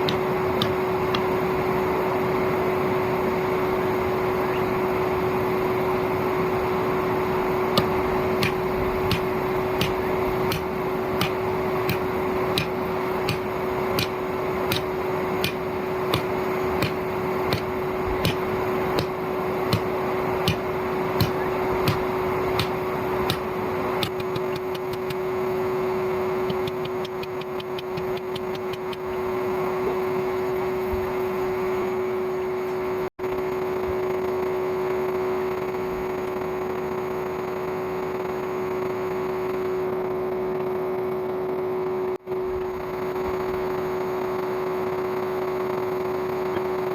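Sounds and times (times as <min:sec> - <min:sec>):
vacuum motor whine: 0:00.0 - 0:46.9
light regular ticks: 0:26.5 - 0:29.1.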